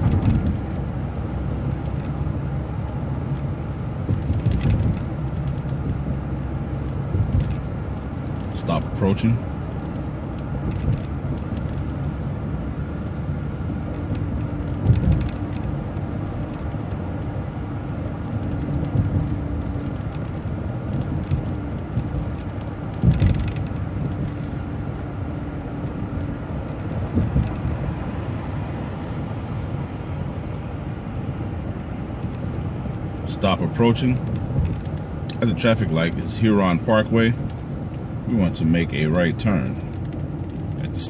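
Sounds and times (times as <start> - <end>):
bus engine and road rumble: 0.0 - 41.0
thumps from bumps: 18.4 - 24.4, 25.9 - 28.1.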